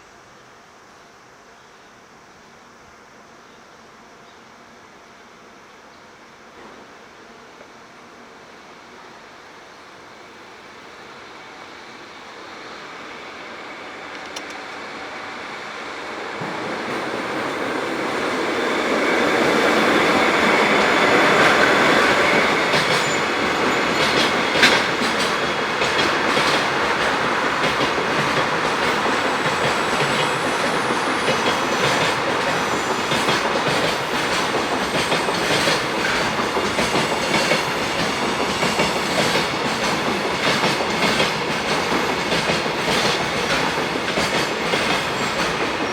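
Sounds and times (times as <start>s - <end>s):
freight train passing: 3.9s - 45.9s
wheels clicking over rail joints: 14.1s - 14.8s, 20.0s - 45.9s.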